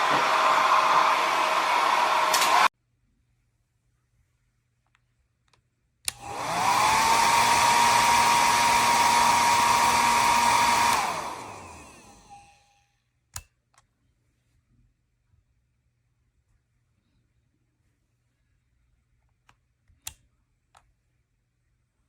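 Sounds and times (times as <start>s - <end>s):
hair dryer motor whirring: 0.0s - 2.7s, 6.1s - 12.7s
hair dryer switch click: 0.0s - 2.7s, 6.1s - 12.4s.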